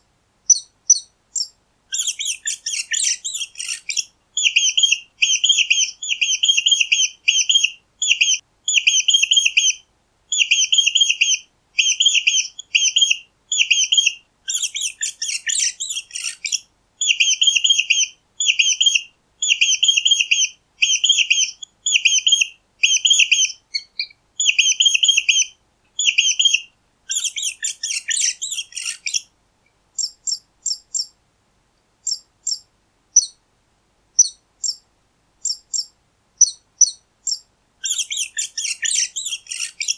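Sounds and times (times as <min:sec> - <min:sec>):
mice squeaking: 0:00.5 - 0:09.7, 0:10.4 - 0:29.2, 0:30.0 - 0:31.1, 0:32.1 - 0:32.6, 0:33.2 - 0:33.4, 0:35.4 - 0:39.9.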